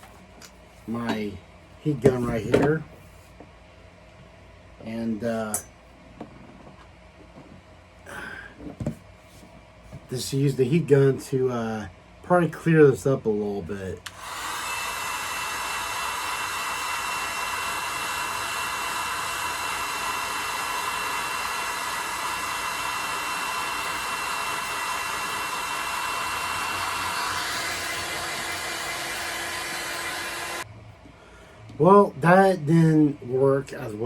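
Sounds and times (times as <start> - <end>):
heat gun blowing air: 14.0 - 30.7.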